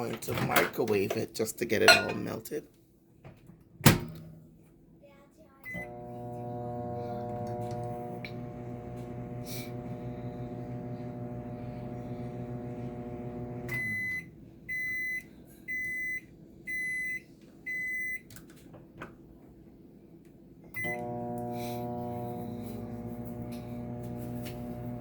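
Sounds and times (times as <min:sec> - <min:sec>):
microwave oven humming: 0:05.7 - 0:18.0, 0:20.8 - 0:25.0
high microwave beeps: 0:13.7 - 0:18.3, 0:20.8 - 0:21.2.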